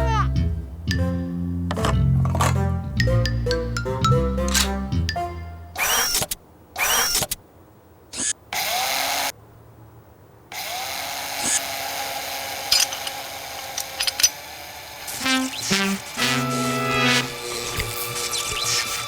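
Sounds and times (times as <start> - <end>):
short cartoon machine sounds: 5.8 - 7.4, 15.1 - 19.0
steady motor running: 10.6 - 19.0.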